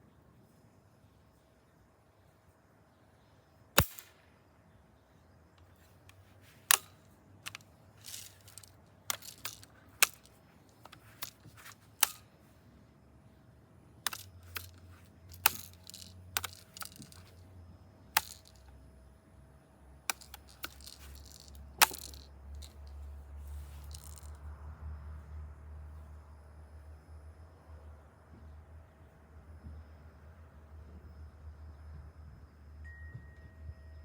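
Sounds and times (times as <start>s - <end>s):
bb gun clicks and snaps: 3.8s - 4.2s, 5.6s - 12.3s, 14.1s - 17.4s, 18.2s - 18.7s, 20.1s - 22.9s, 23.8s - 24.3s.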